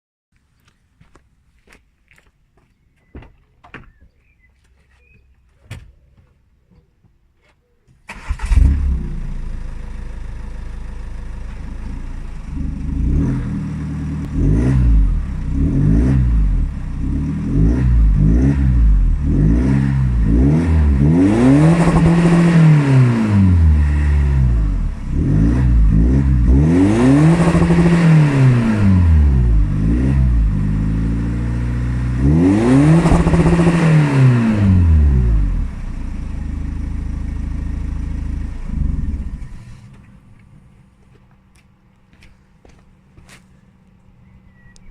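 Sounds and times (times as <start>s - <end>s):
diesel engine revving: 8.1s - 40.0s.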